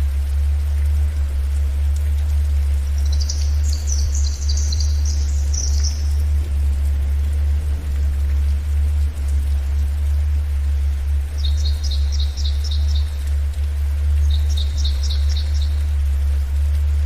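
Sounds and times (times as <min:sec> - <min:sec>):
forest ambience: 0:00.0 - 0:17.0
steady low drone tone: 0:00.0 - 0:17.0
bird twittering: 0:03.0 - 0:06.2, 0:11.4 - 0:13.1, 0:14.2 - 0:15.8.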